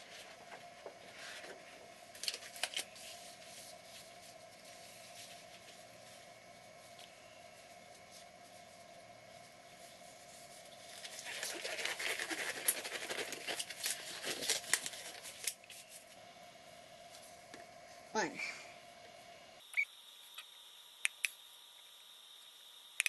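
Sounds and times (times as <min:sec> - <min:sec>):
faint steady hum: 0:00.0 - 0:23.0
rustling crackling handling noise: 0:10.4 - 0:16.2.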